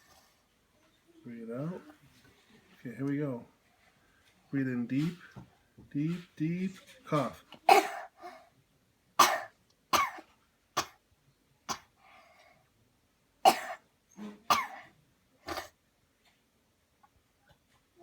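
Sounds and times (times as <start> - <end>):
person coughing: 7.7 - 8.4, 9.2 - 11.0, 13.5 - 13.8, 14.5 - 14.9.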